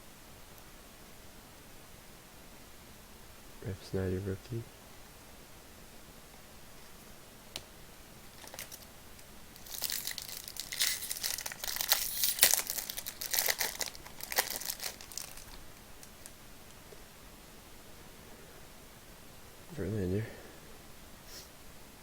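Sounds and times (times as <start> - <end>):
foil wrapper tearing and crinkling: 8.4 - 8.9, 9.5 - 16.4.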